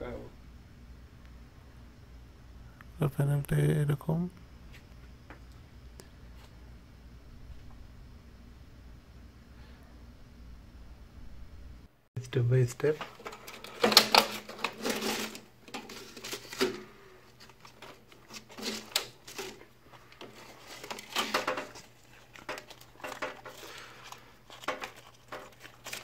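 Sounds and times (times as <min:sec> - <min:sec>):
rustling and crinkling handling: 0:12.8 - 0:26.0.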